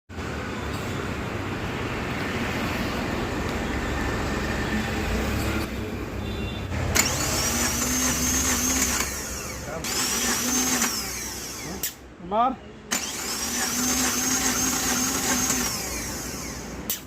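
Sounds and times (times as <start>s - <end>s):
car engine misfiring: 6.8s - 12.0s, 12.9s - 17.0s
sharp click: 11.8s - 12.0s.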